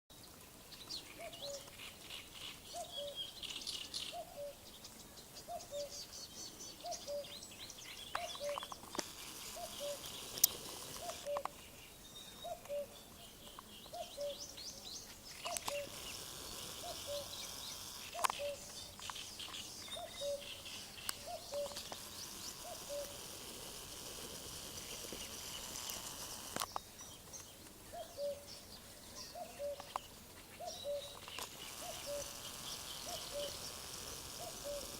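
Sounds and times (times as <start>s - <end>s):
songbirds chirping and trilling: 0.2s - 34.9s
sharp clicks: 8.1s - 11.6s, 15.4s - 19.3s, 21.0s - 27.5s, 31.2s - 34.9s.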